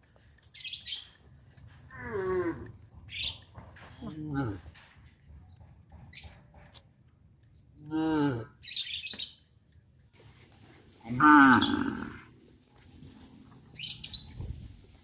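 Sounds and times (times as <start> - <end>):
small birds chirping: 0.1 - 4.3, 5.3 - 10.2, 13.6 - 14.8
cow mooing: 1.9 - 2.8, 11.1 - 12.3.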